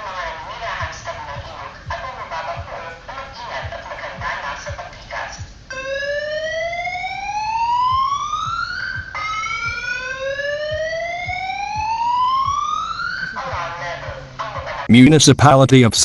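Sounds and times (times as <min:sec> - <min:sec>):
siren wail rising in pitch: 0:05.7 - 0:14.9.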